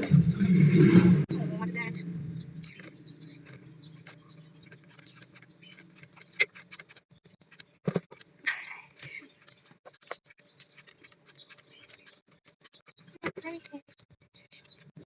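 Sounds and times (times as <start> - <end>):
paper cards handled: 2.6 - 15.0.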